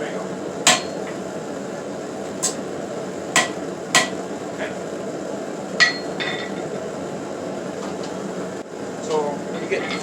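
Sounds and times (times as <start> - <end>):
hammer striking steel on anvil: 0.7 - 1.0, 3.4 - 4.2, 5.8 - 6.5.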